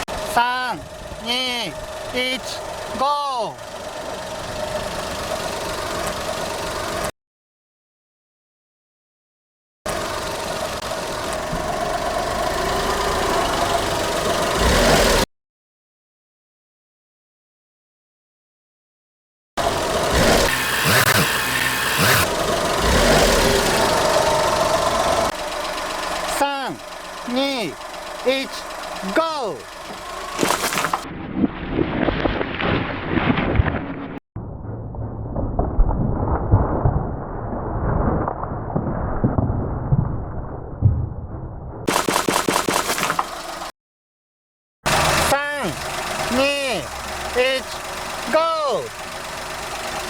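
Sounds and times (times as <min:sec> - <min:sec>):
car engine running: 0:00.0 - 0:07.1, 0:09.9 - 0:15.3, 0:19.6 - 0:31.1, 0:41.9 - 0:43.7, 0:44.9 - 0:50.0.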